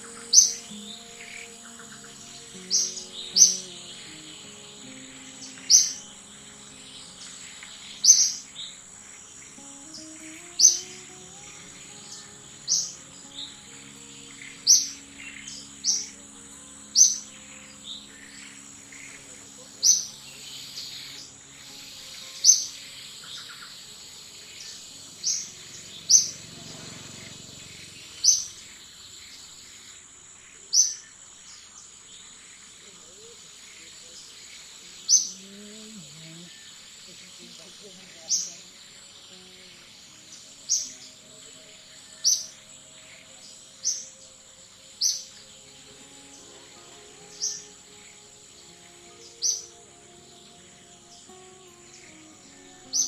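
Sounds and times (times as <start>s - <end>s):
high-pitched chirping calls: 0.0s - 29.6s
steady high-pitched whine: 0.0s - 53.0s.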